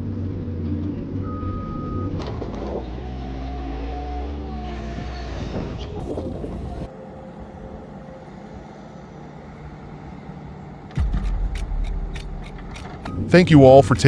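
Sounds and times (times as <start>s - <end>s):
machinery engine running: 0.0s - 14.0s
sharp clicks: 11.0s - 14.0s
steady low rumble: 11.0s - 14.0s.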